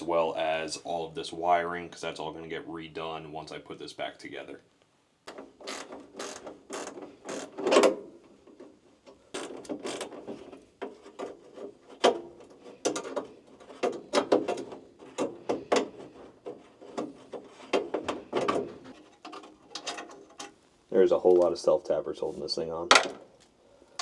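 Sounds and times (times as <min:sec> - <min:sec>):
ratchet clicking: 0:05.3 - 0:07.7, 0:09.4 - 0:10.2.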